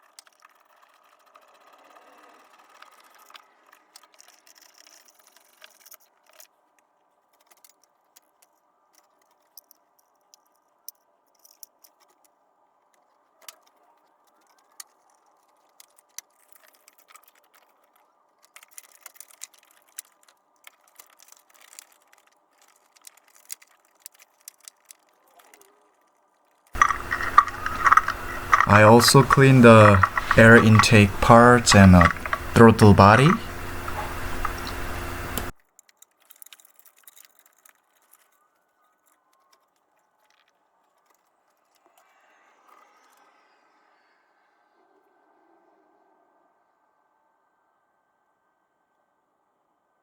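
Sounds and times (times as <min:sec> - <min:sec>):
tools and metal parts clinking: 0:26.8 - 0:35.5.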